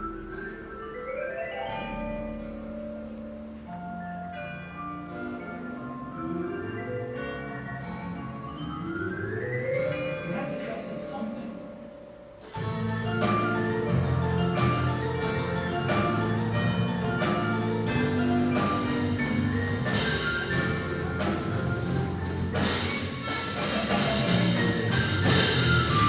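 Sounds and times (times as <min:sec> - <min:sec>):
marimbas playing fast notes: 0:00.0 - 0:26.0
low bass tones: 0:12.6 - 0:26.0.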